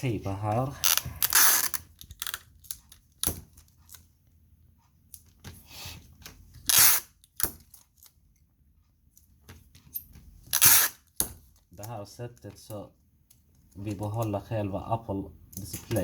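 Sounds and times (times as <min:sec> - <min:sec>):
adhesive tape ripping off roll: 0:00.8 - 0:02.4, 0:06.6 - 0:07.6, 0:10.5 - 0:11.1.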